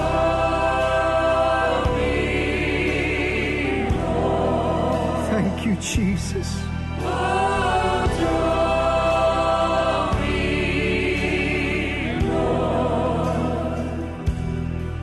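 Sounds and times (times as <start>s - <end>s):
choir and congregation singing: 0.0s - 5.9s, 6.7s - 15.0s.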